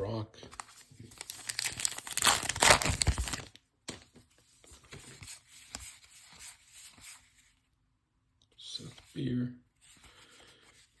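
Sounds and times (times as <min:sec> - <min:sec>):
cards rustling and scraping: 0:00.5 - 0:07.6
wrapper tearing and crinkling: 0:01.1 - 0:03.6.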